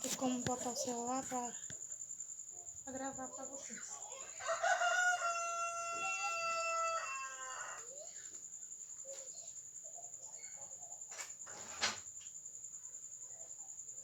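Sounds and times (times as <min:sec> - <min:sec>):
rooster crowing: 0:04.1 - 0:08.0.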